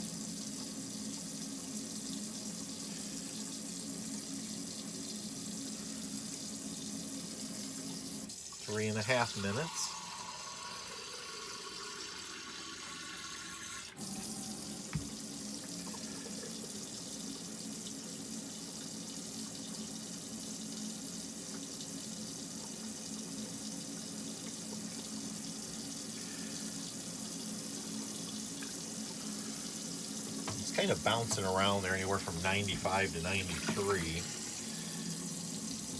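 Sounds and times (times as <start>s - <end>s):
water running from faucet: 0.0s - 35.9s
steady hum: 30.4s - 35.9s.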